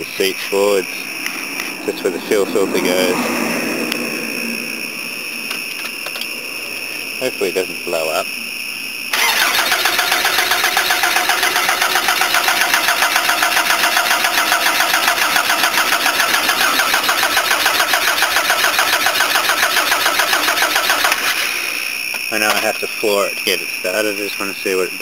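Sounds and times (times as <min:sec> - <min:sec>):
engine cranking on starter: 0:09.1 - 0:21.8.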